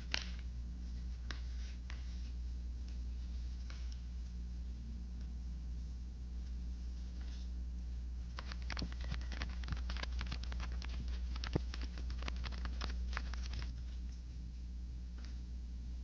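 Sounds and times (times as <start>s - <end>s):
paper tapping and crinkling: 0.0s - 0.5s, 8.3s - 14.0s.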